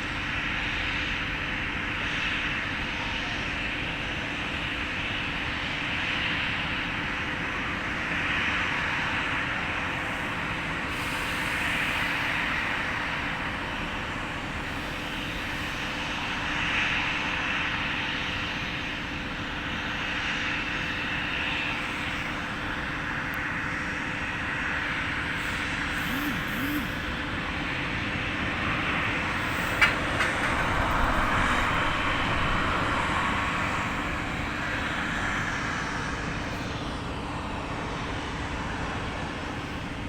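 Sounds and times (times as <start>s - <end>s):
jet engines droning: 0.0s - 40.0s.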